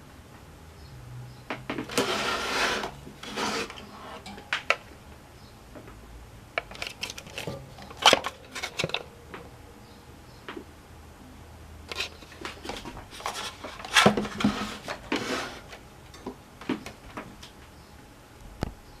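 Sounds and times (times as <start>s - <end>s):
objects being handled: 1.5s - 4.9s, 6.6s - 9.5s, 11.9s - 17.7s.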